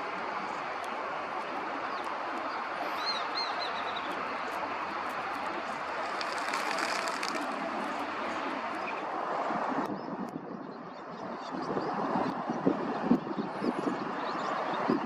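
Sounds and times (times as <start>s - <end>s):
steady background noise: 0.0s - 15.0s
pigeon wings rushing: 4.1s - 8.8s
raptor sharp high calls: 6.0s - 7.7s.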